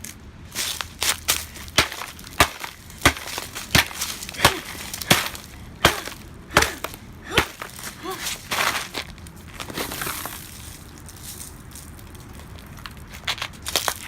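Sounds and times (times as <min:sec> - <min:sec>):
hard smashing blows: 0:00.6 - 0:10.2.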